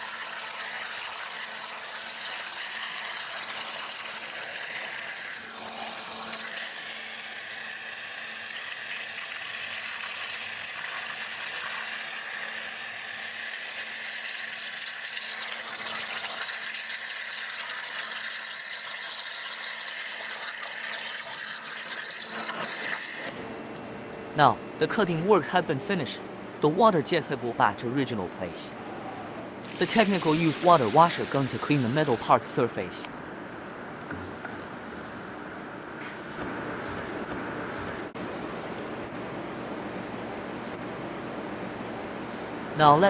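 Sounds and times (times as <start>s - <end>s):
water jet hissing rush: 29.6s - 32.4s.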